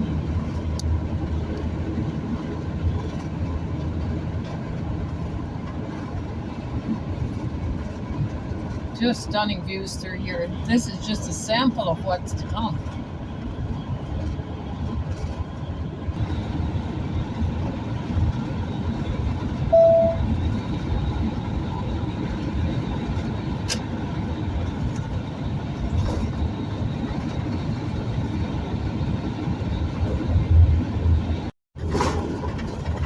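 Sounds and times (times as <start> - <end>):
road and engine rumble in car: 0.0 - 33.0
short beep: 19.7 - 20.4.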